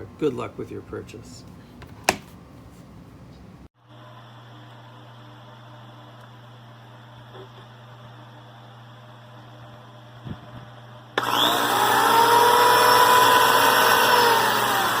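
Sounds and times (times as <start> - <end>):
electric hand planer motor: 11.2 - 15.0.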